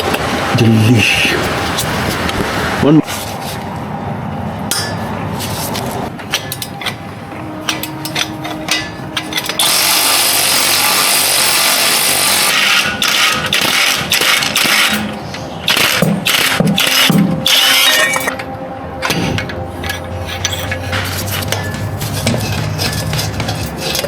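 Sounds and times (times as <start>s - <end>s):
power tool running: 9.6s - 18.0s.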